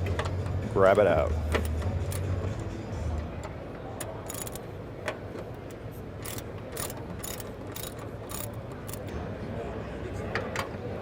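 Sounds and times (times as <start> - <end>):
hand ratchet clicking: 4.0 - 4.7, 6.2 - 9.1.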